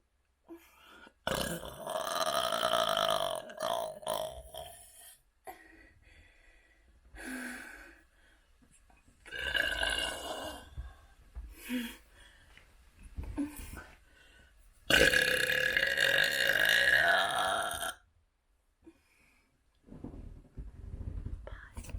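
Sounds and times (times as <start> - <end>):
person burping: 1.2 - 4.8, 9.3 - 10.8, 14.9 - 18.0.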